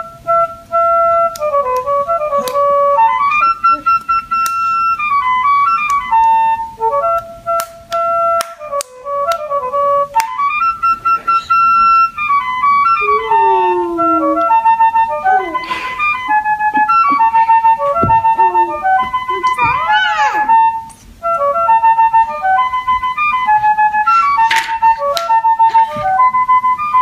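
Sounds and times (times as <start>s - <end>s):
electronic toy flute melody: 0.0s - 27.0s.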